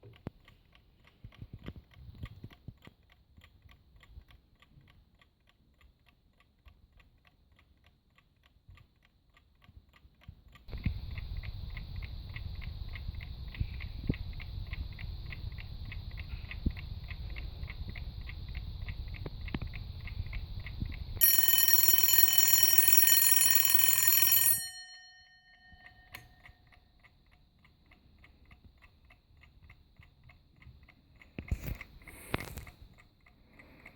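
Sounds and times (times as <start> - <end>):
alarm clock ticking: 20.0 - 31.2
alarm bell ringing: 21.2 - 26.4.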